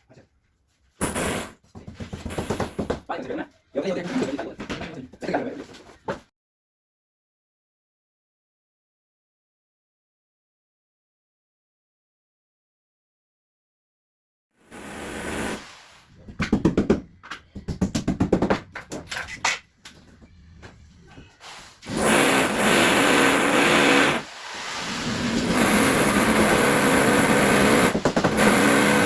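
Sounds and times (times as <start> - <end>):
power tool running: 21.9 - 24.3, 25.0 - 29.0.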